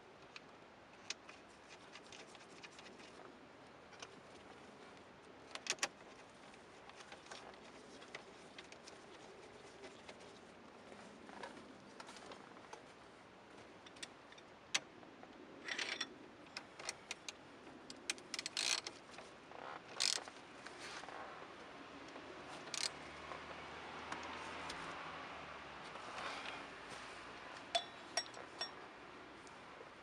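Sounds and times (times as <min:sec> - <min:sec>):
steering wheel parts clicking: 0:15.7 - 0:19.2, 0:19.8 - 0:20.4, 0:22.6 - 0:24.8.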